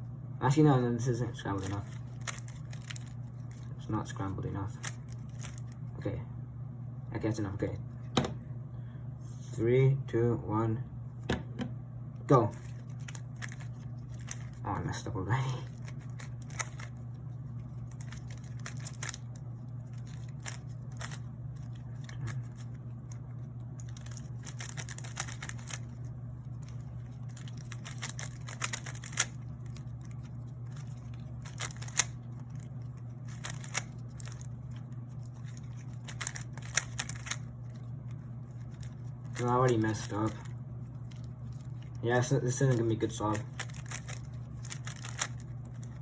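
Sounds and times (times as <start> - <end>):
steady low hum: 0.0 - 46.0
plastic puzzle cube clicking: 24.0 - 25.8, 27.4 - 29.3, 31.4 - 32.1, 33.3 - 34.4, 36.1 - 37.4.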